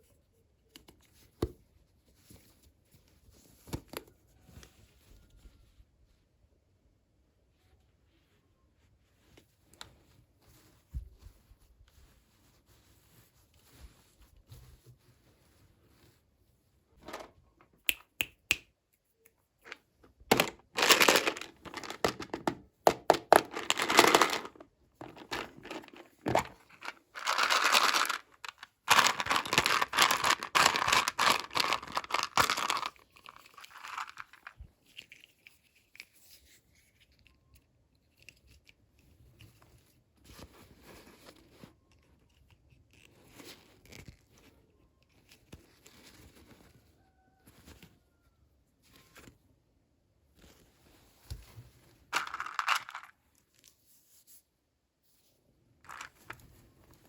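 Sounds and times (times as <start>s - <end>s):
packaging tearing and crinkling: 23.3s - 33.0s.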